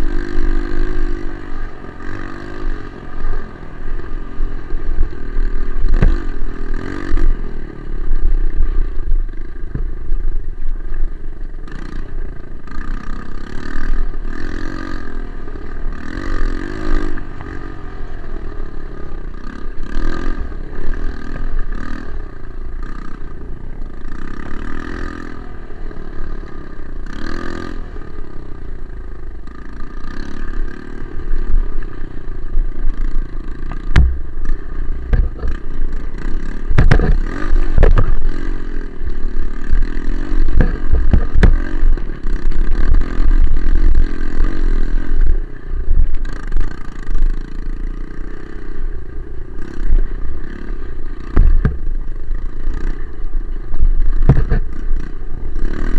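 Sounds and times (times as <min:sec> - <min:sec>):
motorcycle engine running: 0:00.0 - 0:55.9
knocks and rattles: 0:33.7 - 0:35.6, 0:36.7 - 0:38.2, 0:40.5 - 0:41.6, 0:54.2 - 0:54.7
heavy low thumps: 0:33.9 - 0:35.5.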